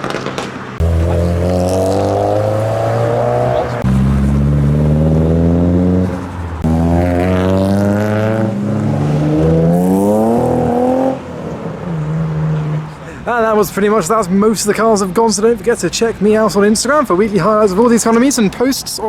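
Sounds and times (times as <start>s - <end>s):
car engine accelerating hard: 0.0s - 13.1s.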